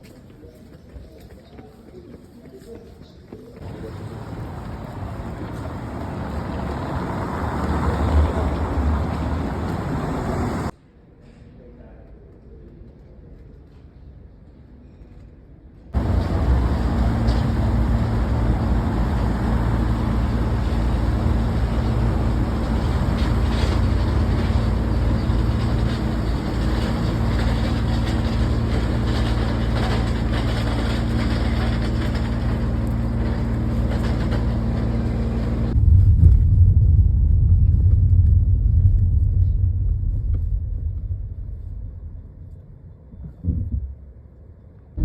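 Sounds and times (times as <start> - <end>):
motor vehicle rumble: 3.6 - 10.8, 16.0 - 44.3.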